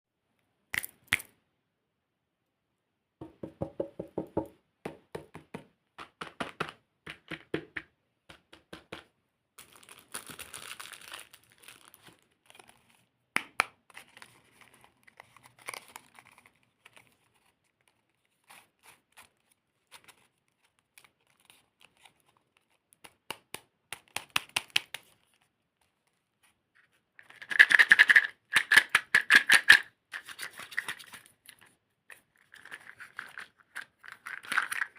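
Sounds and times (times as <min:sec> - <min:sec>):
wrapper tearing: 0:09.6 - 0:13.0, 0:14.0 - 0:17.2
plastic wrapper crinkling: 0:09.6 - 0:13.2, 0:13.9 - 0:23.0, 0:32.4 - 0:34.9.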